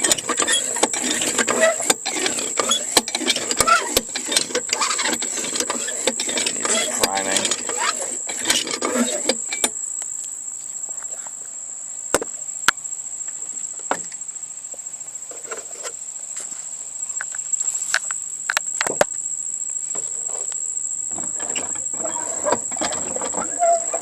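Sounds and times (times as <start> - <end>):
clattering: 0.0 - 9.7, 21.1 - 24.0
sharp clicks and knocks: 0.0 - 9.8
high-pitched insect chorus: 0.0 - 24.0.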